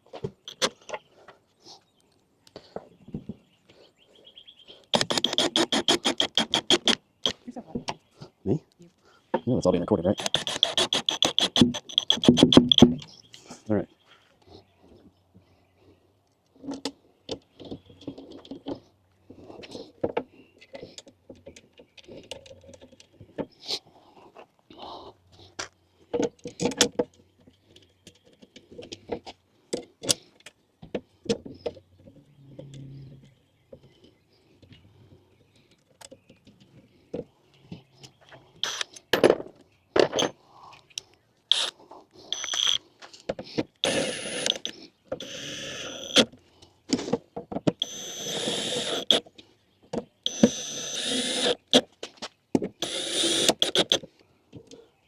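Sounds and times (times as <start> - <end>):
wooden parts knocking: 5.0 - 7.0, 10.2 - 13.0.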